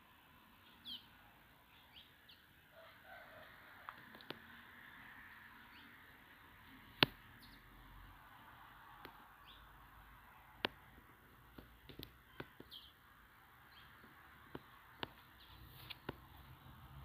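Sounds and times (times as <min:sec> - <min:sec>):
faint outdoor ambience: 0:00.0 - 0:17.0
bird chirps: 0:00.6 - 0:02.5, 0:05.6 - 0:06.0, 0:12.2 - 0:13.0, 0:13.7 - 0:16.5.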